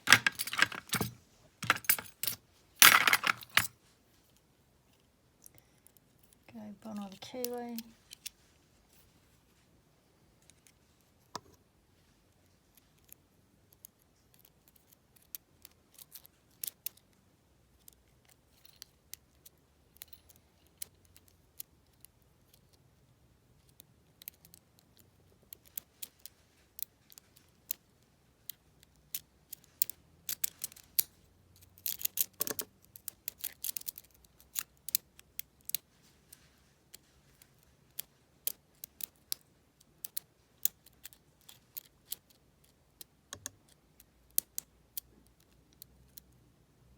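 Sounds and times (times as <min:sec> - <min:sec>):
lock pick clicking in a lock: 0:00.1 - 0:03.7, 0:28.8 - 0:35.8.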